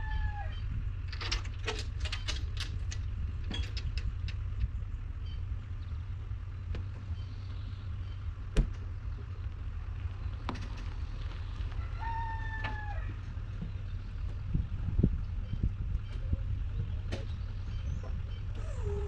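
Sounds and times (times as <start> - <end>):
rooster crowing: 0.0 - 0.6, 11.7 - 13.3
steady low rumble: 0.0 - 19.0.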